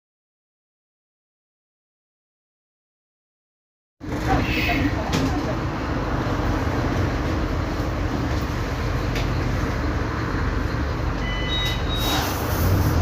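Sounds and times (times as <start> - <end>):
bus diesel engine running: 4.0 - 13.0
short high beeps: 11.2 - 12.2
air hiss: 12.0 - 13.0.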